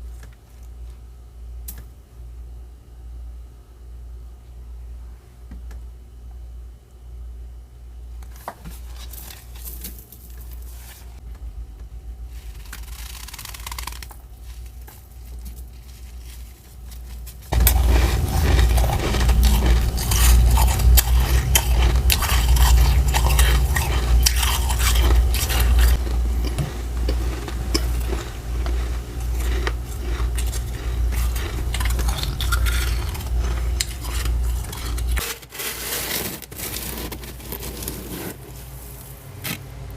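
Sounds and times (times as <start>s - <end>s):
frost scraping off freezer walls: 12.3s - 39.6s.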